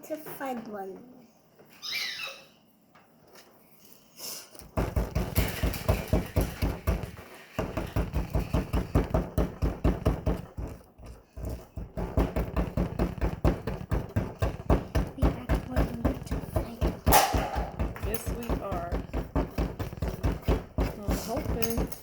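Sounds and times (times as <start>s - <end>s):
digging tool knocking on plaster: 4.7s - 22.0s.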